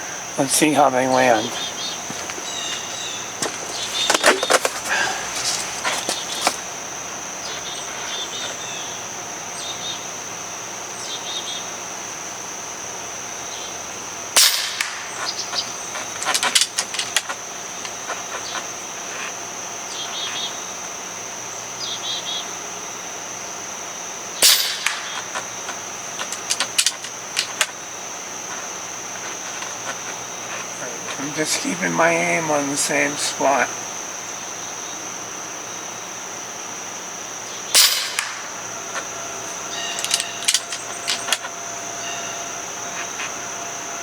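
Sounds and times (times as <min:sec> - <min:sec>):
air rifle shots: 0:14.4 - 0:17.1, 0:24.4 - 0:27.7, 0:37.7 - 0:39.2
rifle action clicks: 0:39.9 - 0:41.5.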